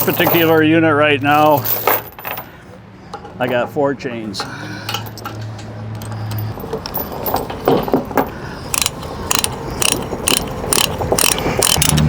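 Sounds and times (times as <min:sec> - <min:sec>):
metal chain clicks: 0:00.0 - 0:00.7, 0:01.3 - 0:02.6, 0:04.9 - 0:12.0.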